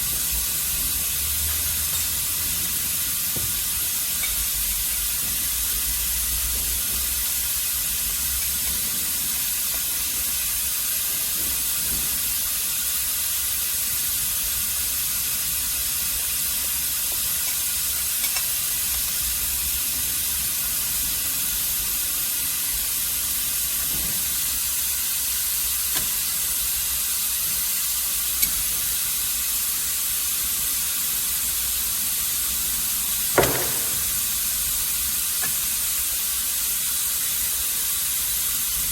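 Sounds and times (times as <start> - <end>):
ultrasonic cleaner hissing: 0.0 - 38.9
sharp knock: 33.4 - 34.2.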